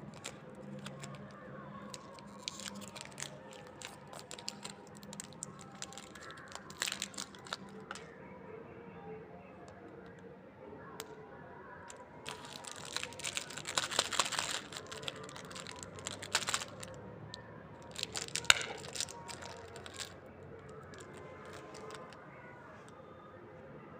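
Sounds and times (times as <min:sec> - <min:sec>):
candy wrappers crinkling: 0:00.0 - 0:08.1, 0:11.9 - 0:22.3.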